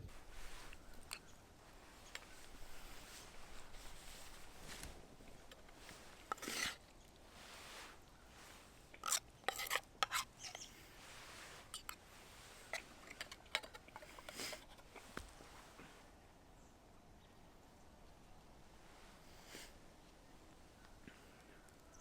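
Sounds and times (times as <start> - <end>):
utensil scraping a metal pan: 5.4 - 6.8, 9.0 - 15.1.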